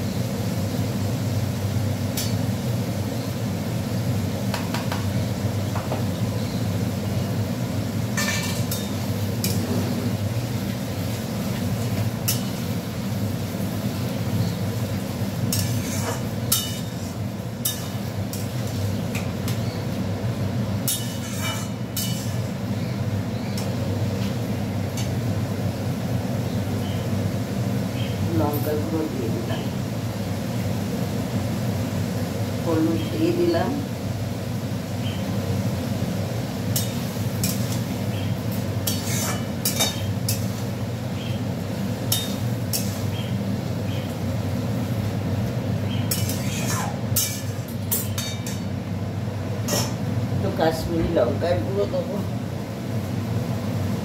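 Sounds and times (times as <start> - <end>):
metal spatula scraping a pan: 15.5 - 18.7, 20.9 - 22.6, 38.8 - 40.6, 42.1 - 43.2, 46.1 - 48.7, 49.7 - 50.0.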